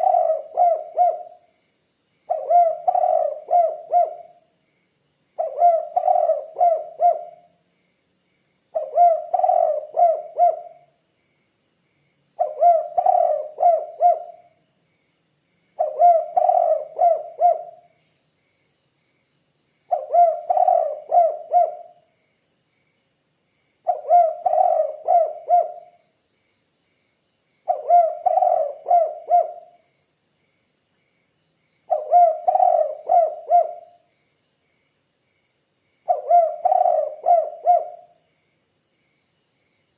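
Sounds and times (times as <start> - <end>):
dove cooing: 0.0 - 1.5, 2.3 - 4.4, 5.4 - 7.5, 8.8 - 10.9, 12.4 - 14.5, 15.8 - 17.9, 19.9 - 22.0, 23.9 - 26.0, 27.7 - 29.8, 31.9 - 34.1, 36.1 - 38.2.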